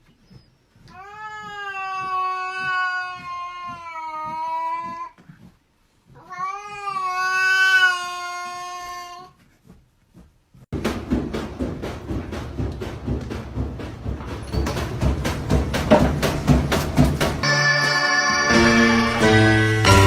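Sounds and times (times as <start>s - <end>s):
cat yowling: 0.9s - 5.1s, 6.2s - 9.3s.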